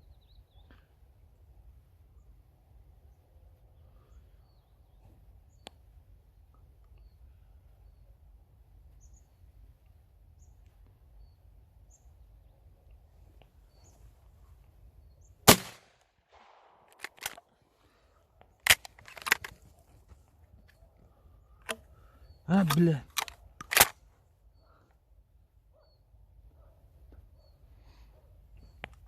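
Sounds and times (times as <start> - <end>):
loud gunshots: 15.5 - 16.8
sharp clicks: 16.9 - 17.5, 18.6 - 19.6, 22.5 - 24.0.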